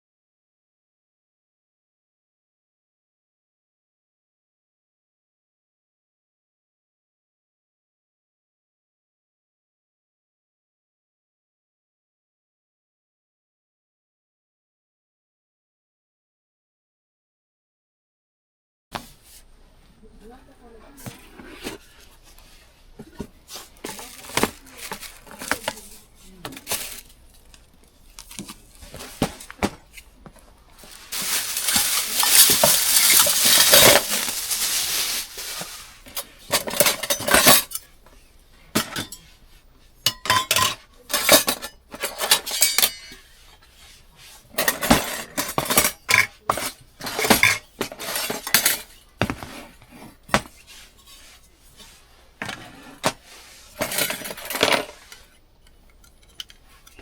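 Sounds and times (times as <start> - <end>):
metal utensils and dishes clinking: 21.0 - 30.1, 30.8 - 39.4, 40.0 - 57.0
utensil scraping dish: 30.8 - 37.9, 40.1 - 57.0.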